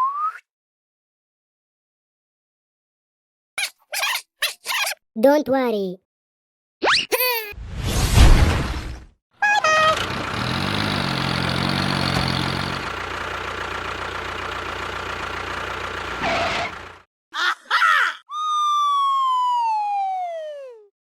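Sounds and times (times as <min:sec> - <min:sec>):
engine starting and running: 0:09.6 - 0:17.1.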